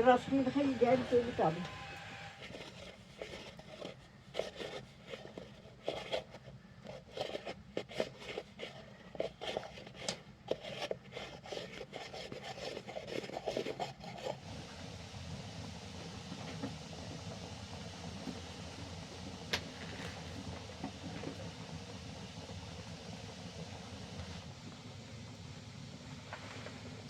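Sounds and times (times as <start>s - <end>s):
scraping and rubbing strokes: 2.3s - 14.4s.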